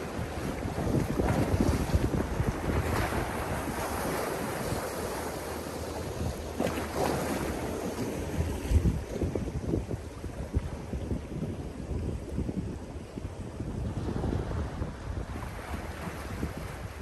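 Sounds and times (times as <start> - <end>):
sea waves washing onto beach: 0.0 - 11.2
wind buffeting microphone: 0.0 - 17.0.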